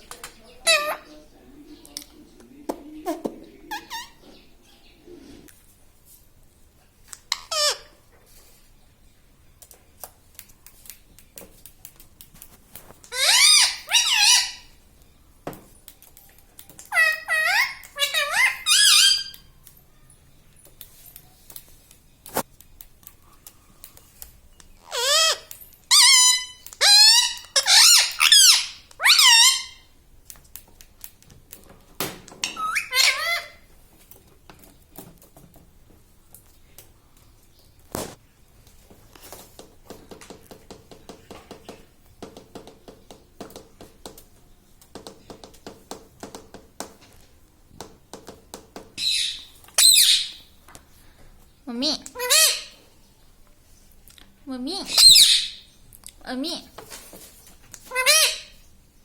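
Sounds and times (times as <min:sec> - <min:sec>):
parakeet squeaky calls: 0:00.6 - 0:01.1, 0:03.7 - 0:04.3, 0:07.3 - 0:07.9, 0:13.1 - 0:14.8, 0:16.9 - 0:19.5, 0:24.8 - 0:29.8, 0:32.4 - 0:33.6, 0:49.0 - 0:50.5, 0:52.2 - 0:52.8, 0:54.9 - 0:55.7, 0:57.9 - 0:58.6.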